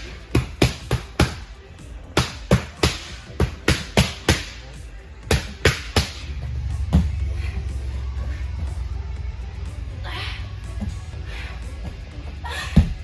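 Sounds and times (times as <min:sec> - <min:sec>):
boxing gloves hitting pads: 0:00.0 - 0:06.2
background music: 0:00.0 - 0:13.0.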